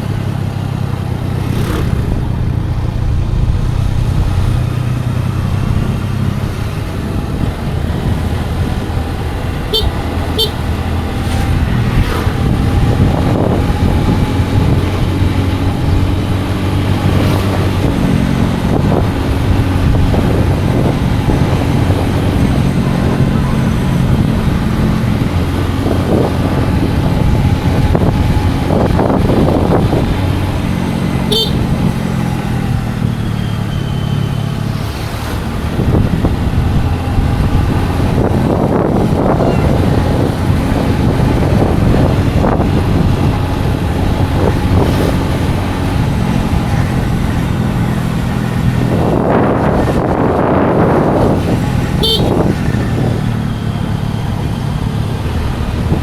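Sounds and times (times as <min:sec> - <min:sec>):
road and wind noise: 0:00.0 - 0:56.0
scooter engine running: 0:00.0 - 0:56.0
passing rush of noise: 0:00.9 - 0:17.8
short high horn toots: 0:09.7 - 0:10.7, 0:31.3 - 0:31.7, 0:52.0 - 0:52.5.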